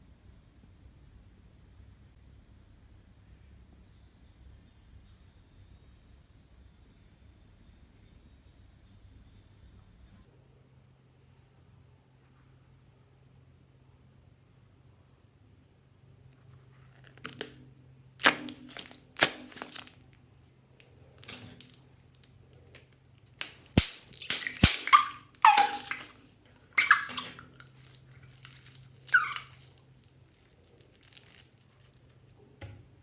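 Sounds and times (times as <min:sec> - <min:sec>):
faint steady hum: 0:00.0 - 0:33.0
slime crackling and popping: 0:18.2 - 0:20.2, 0:21.2 - 0:32.4
short falling squeaks: 0:29.1 - 0:29.6.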